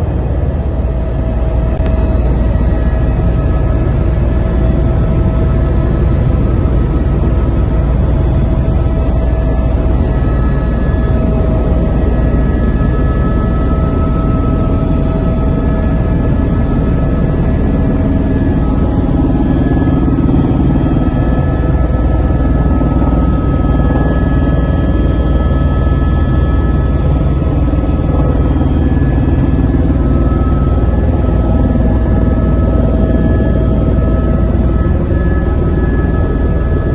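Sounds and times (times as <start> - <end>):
helicopter engine and rotor drone: 0.0 - 36.9.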